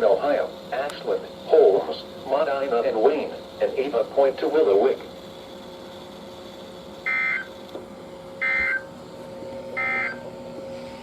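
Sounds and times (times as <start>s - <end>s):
faint steady hum: 0.0s - 11.0s
electronic data buzzes: 4.8s - 7.7s, 8.4s - 8.9s, 9.7s - 10.3s.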